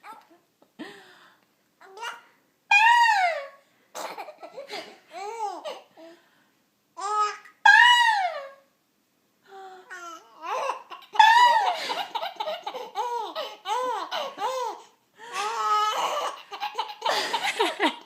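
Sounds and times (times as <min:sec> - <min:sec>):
baby laughing: 0:10.2 - 0:18.0.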